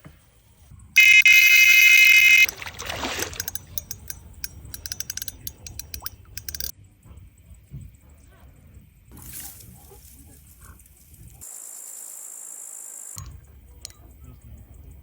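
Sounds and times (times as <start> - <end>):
bite alarm beep: 1.0 - 2.5
quick ticks: 3.4 - 6.7.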